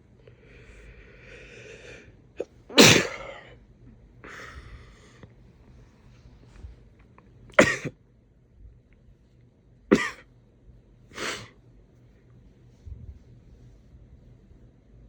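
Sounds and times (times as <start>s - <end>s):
breathy intake of air: 0.3s - 2.1s, 4.2s - 5.2s
man sneezing: 2.7s - 3.5s.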